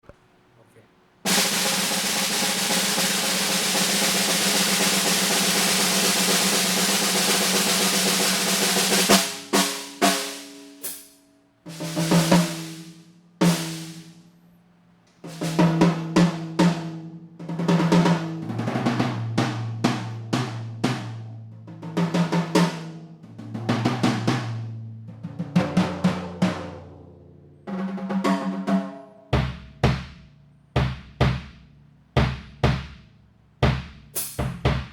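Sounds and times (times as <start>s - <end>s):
snare drum roll: 1.3s - 11.1s, 11.7s - 14.2s, 15.2s - 26.9s, 27.7s - 31.6s, 32.2s - 34.9s
bass drum strokes: 29.4s - 34.9s.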